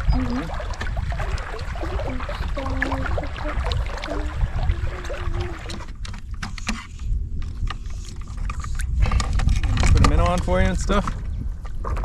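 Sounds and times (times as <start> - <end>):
heavy low rumble: 0.0 - 6.0
water lapping around paddleboard: 0.0 - 12.0.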